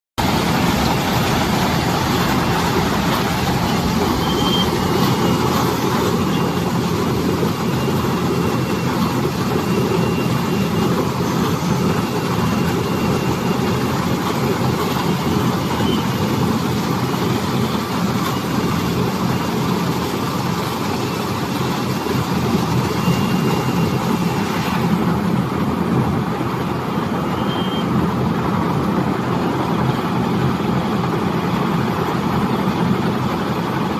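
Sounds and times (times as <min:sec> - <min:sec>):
baler machine running: 0:00.2 - 0:27.4.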